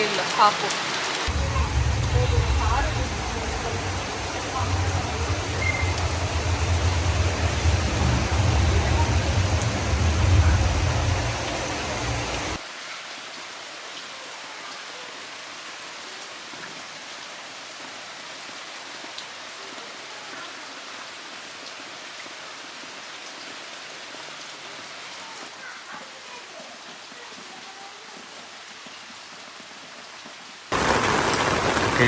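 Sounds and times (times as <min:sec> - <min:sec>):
heavy rain falling: 0:00.0 - 0:12.8, 0:30.7 - 0:32.0
low rumble: 0:01.3 - 0:12.6.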